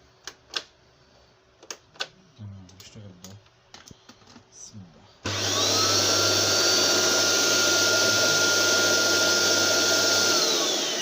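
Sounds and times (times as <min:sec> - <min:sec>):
vacuum cleaner motor whining: 0:05.2 - 0:11.0.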